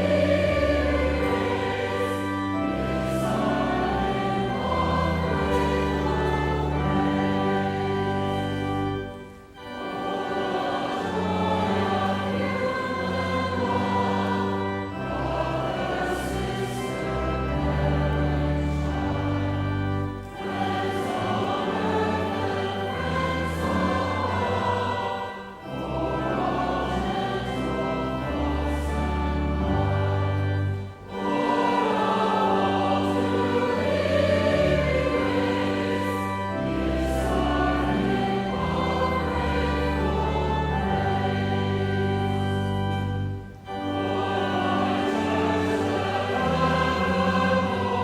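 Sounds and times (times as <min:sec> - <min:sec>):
choir and congregation singing hymn: 0:00.0 - 0:48.0
sustained low accompaniment: 0:00.0 - 0:48.0.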